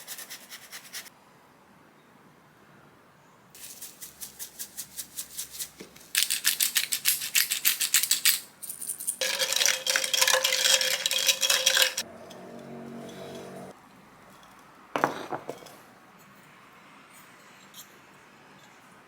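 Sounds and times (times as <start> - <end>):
utensil beating in a bowl: 9.2 - 12.0
bowl ringing: 9.2 - 13.7.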